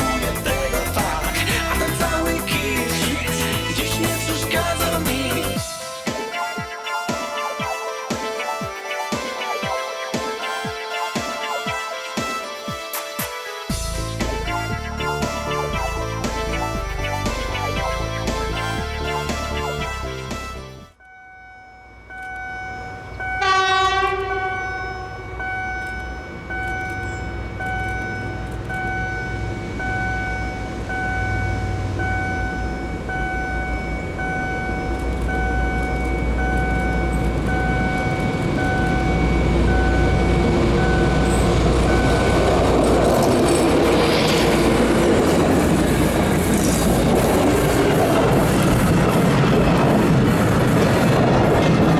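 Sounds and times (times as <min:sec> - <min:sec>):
train rumble: 0:00.0 - 0:06.5, 0:13.7 - 0:51.9
beeping tone: 0:21.0 - 0:51.9
train horn blast: 0:21.4 - 0:35.6.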